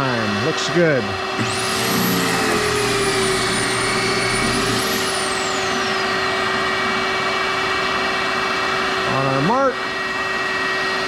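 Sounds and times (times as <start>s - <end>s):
drill motor whine: 1.3s - 8.8s
shop vac running: 1.3s - 9.3s.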